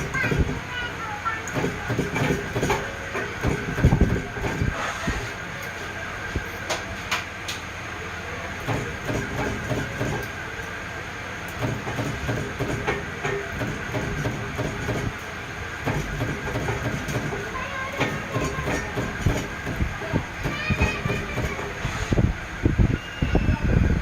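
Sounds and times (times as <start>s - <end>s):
machine running: 0.0s - 24.0s
sharp clicks and knocks: 11.5s - 15.2s, 15.8s - 21.8s.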